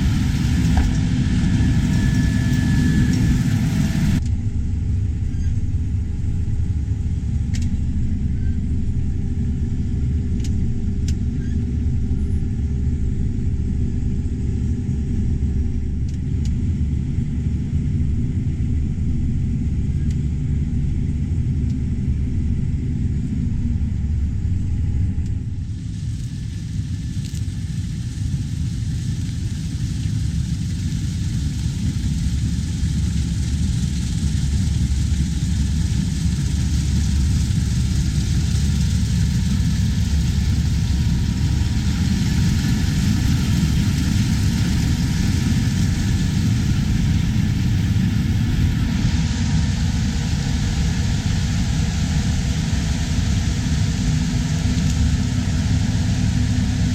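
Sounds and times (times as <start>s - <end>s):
harvest machinery engines rumbling: 0.0s - 4.2s.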